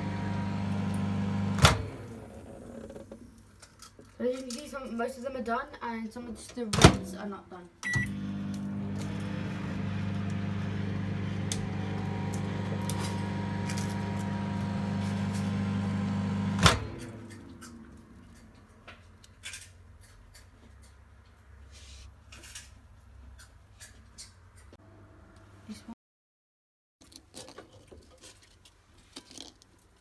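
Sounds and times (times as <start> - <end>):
microwave oven humming: 0.0 - 3.2, 7.8 - 18.0.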